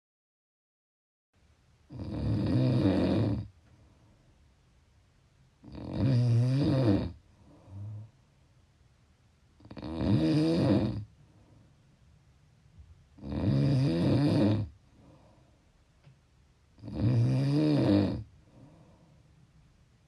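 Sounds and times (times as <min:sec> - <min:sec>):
person snoring: 0:01.9 - 0:03.5, 0:05.6 - 0:08.1, 0:09.6 - 0:11.1, 0:13.2 - 0:15.2, 0:16.8 - 0:18.9.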